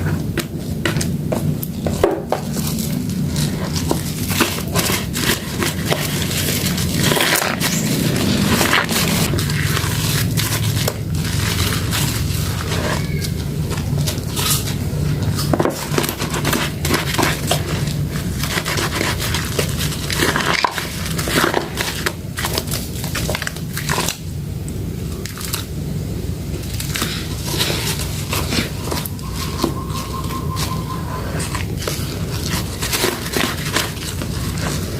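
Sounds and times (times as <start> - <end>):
steady low hum: 0.0 - 34.9
wet soap crackles and squishes: 2.4 - 29.4.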